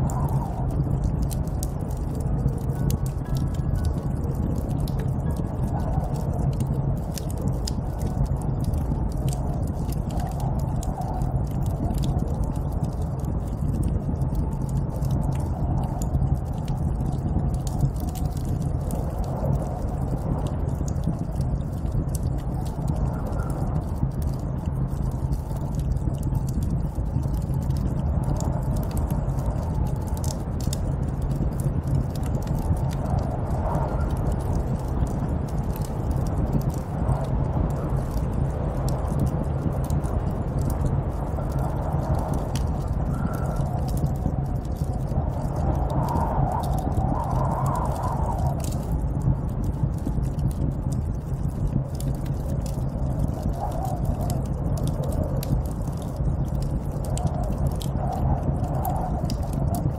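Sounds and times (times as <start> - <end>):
sharp crackling clicks: 0.0 - 59.9
snowstorm wind rushing: 31.6 - 49.7, 57.1 - 59.8.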